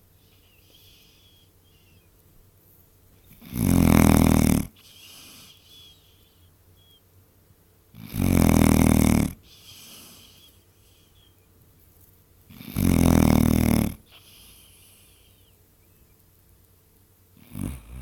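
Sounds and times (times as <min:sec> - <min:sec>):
dog snoring: 0:03.2 - 0:05.7, 0:07.9 - 0:10.5, 0:12.5 - 0:15.2, 0:17.4 - 0:18.0.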